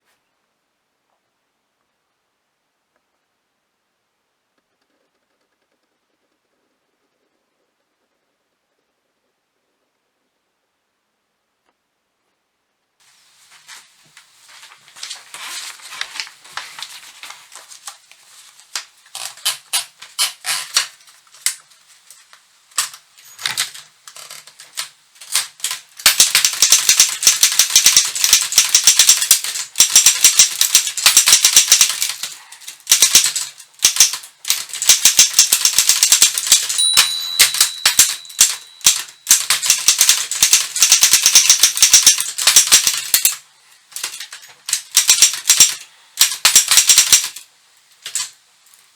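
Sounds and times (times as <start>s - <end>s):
manual typewriter typing: 14.6s - 47.4s, 48.0s - 48.3s.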